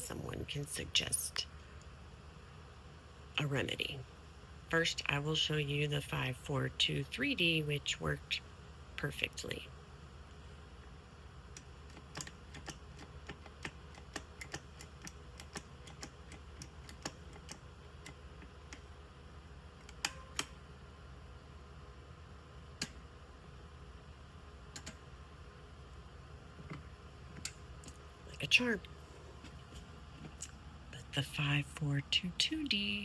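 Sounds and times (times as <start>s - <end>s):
combination lock clicking: 19.8s - 20.6s.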